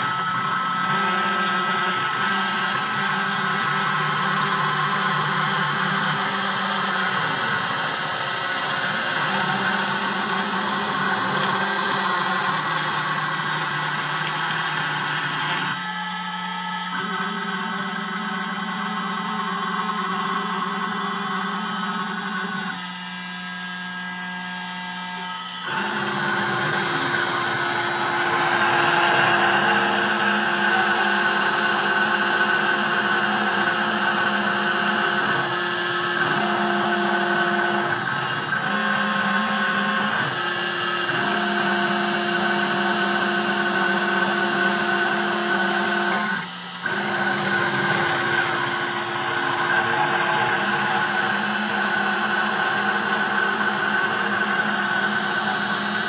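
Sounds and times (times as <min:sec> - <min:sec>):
router spindle whine: 0:00.0 - 0:56.0
bit milling plastic: 0:25.3 - 0:56.0.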